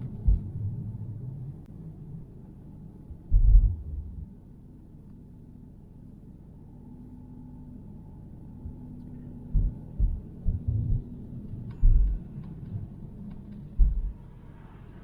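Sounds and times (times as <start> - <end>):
heavy low thump: 0.0 - 1.0, 3.3 - 4.3, 9.6 - 11.2, 11.8 - 12.2, 13.8 - 14.2
car driving on snowy road: 0.0 - 1.7.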